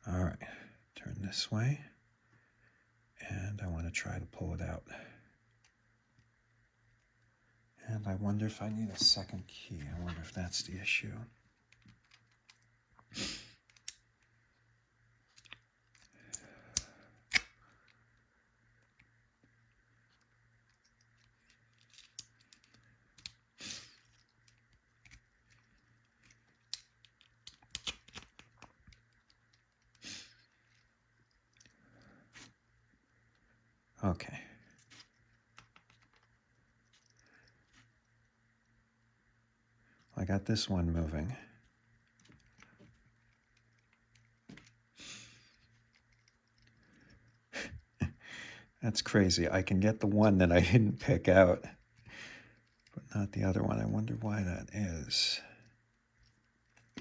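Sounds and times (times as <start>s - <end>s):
low steady hum: 0.0s - 57.0s
lock core and key clicking: 24.0s - 30.0s
soft breath: 46.8s - 48.8s, 52.0s - 52.7s.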